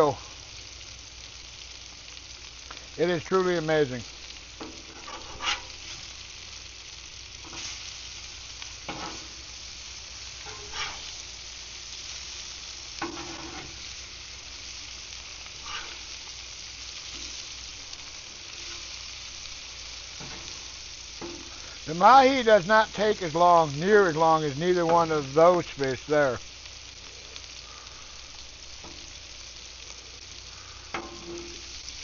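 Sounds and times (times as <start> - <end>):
fish sizzling on a grill: 0.0 - 32.0
knocks and scrapes: 4.9 - 5.7.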